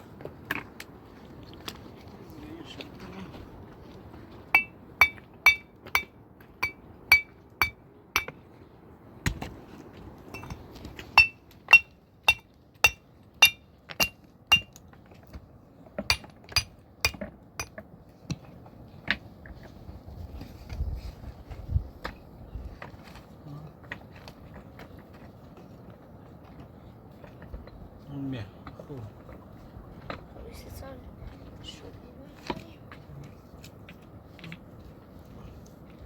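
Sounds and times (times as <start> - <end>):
hammer striking metal: 4.6 - 8.4.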